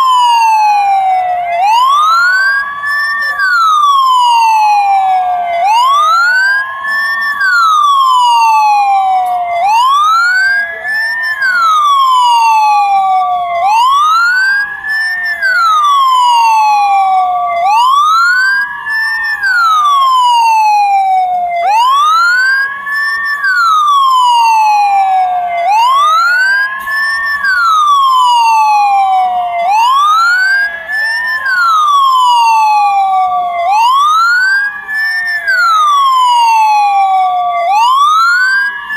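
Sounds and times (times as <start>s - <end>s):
ambulance siren wailing: 0.0s - 38.9s.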